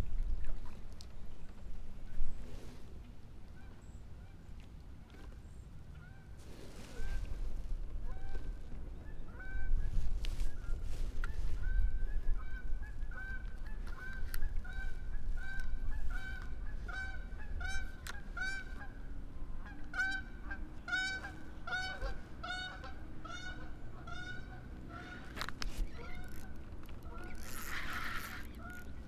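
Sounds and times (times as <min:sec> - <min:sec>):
geese honking: 0:19.6 - 0:26.5, 0:27.1 - 0:28.9.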